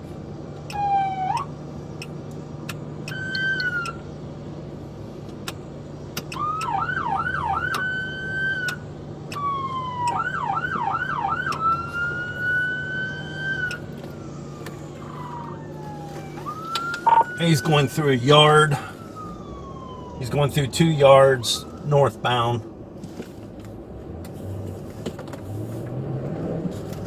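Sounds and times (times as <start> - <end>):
police siren whoops and wails: 0.7 - 1.5, 3.1 - 4.0, 6.3 - 22.6.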